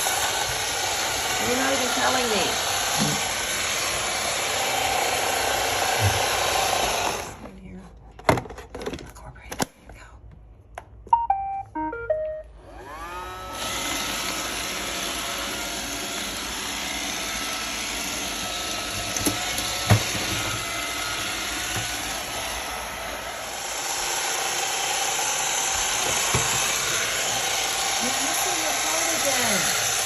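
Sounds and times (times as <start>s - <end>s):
robot vacuum motor whir: 0.0s - 7.5s, 12.6s - 30.0s
robot vacuum start-up beeps: 11.1s - 12.5s.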